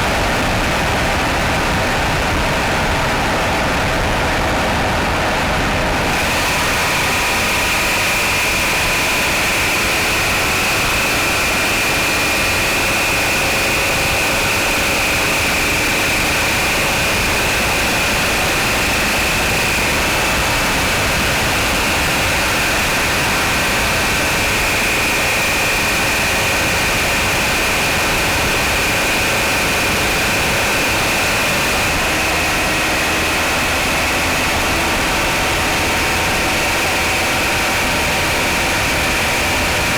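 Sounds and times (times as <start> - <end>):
high-pitched engine whine: 0.0 - 39.9
car engine idling: 6.0 - 32.0.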